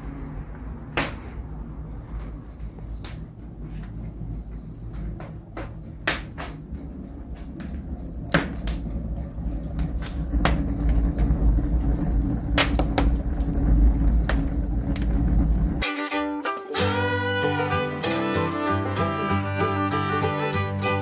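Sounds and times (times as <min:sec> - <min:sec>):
low rumble: 0:01.4 - 0:15.8
sharp knocks and taps: 0:02.2 - 0:08.8.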